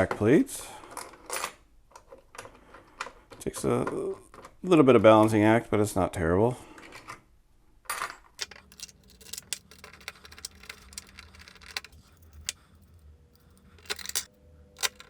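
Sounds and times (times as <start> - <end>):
metallic clicks of screws: 8.4 - 15.0.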